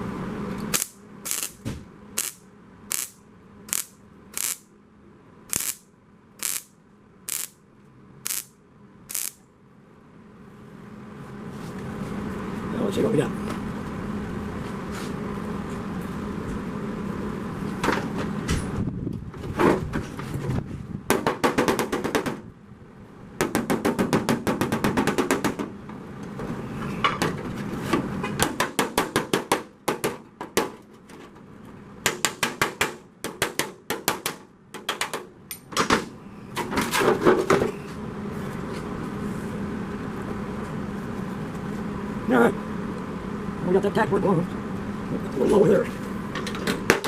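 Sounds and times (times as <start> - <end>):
steady low hum: 0.0 - 47.0
electric welder clicking: 0.6 - 4.7, 5.5 - 6.7, 7.3 - 7.6, 8.2 - 9.4.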